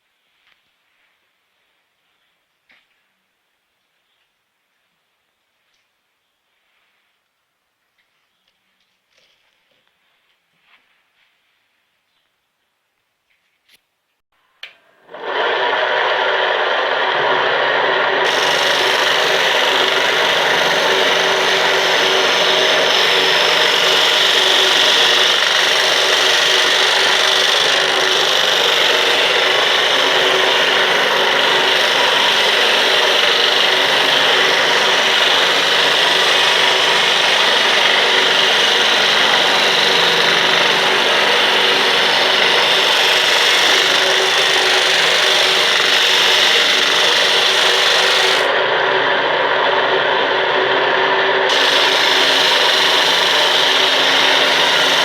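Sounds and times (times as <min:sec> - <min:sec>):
sanding drum rasping on wood: 0:18.2 - 0:48.5, 0:51.5 - 0:55.0.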